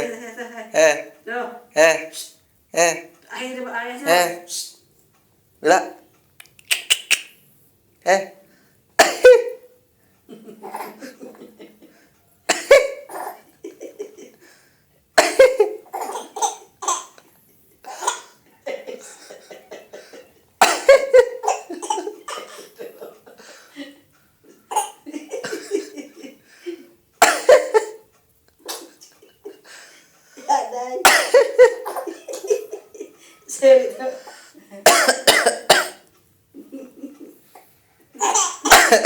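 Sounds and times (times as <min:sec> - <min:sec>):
adult coughing: 0:09.0 - 0:09.6, 0:12.5 - 0:13.4, 0:15.2 - 0:17.2, 0:17.9 - 0:18.4, 0:19.8 - 0:23.2, 0:24.7 - 0:25.9, 0:27.2 - 0:28.0, 0:30.5 - 0:32.8, 0:34.8 - 0:36.1, 0:38.2 - 0:39.0
baby laughing: 0:10.4 - 0:11.8, 0:12.7 - 0:14.3, 0:30.4 - 0:33.1.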